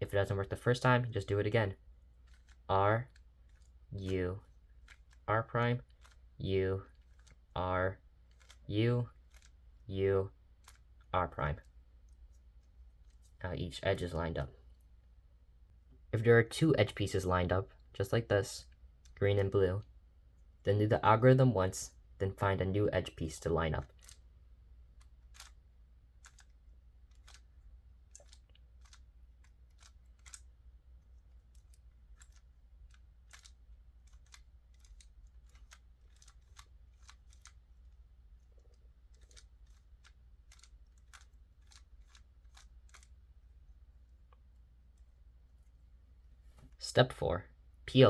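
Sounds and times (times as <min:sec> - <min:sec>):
low steady hum: 0:00.0 - 0:48.0
puzzle cube plastic clicks: 0:02.0 - 0:07.5, 0:08.2 - 0:09.8, 0:10.5 - 0:13.4, 0:23.3 - 0:24.3, 0:24.9 - 0:43.3.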